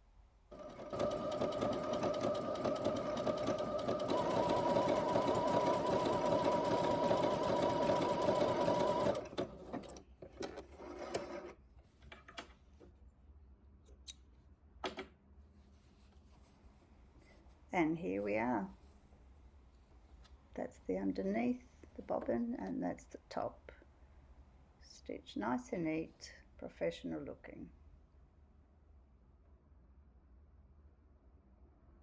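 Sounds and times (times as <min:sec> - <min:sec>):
sewing machine stitching: 0:00.5 - 0:11.6.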